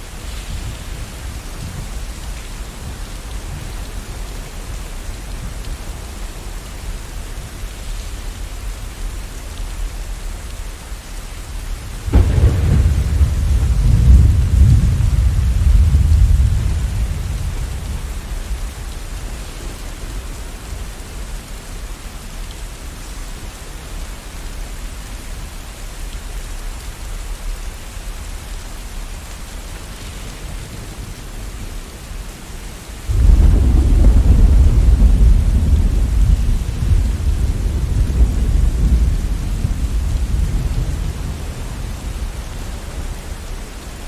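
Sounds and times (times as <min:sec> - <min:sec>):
steady rain falling: 0:00.0 - 0:44.0
thunder crack and rumble: 0:12.0 - 0:20.8, 0:33.1 - 0:43.6.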